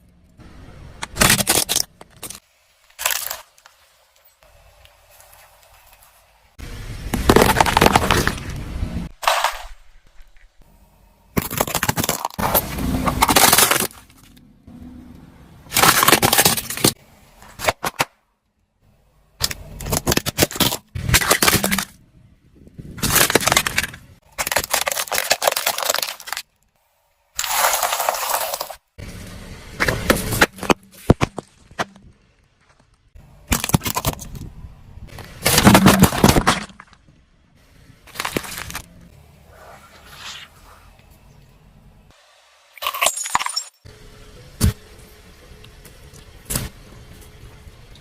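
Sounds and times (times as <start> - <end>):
plastic toys cracking under tyres: 1.0 - 3.8, 7.1 - 8.6, 11.4 - 14.4, 15.7 - 18.2, 19.4 - 22.0, 22.8 - 26.6, 29.8 - 37.2, 38.0 - 39.1.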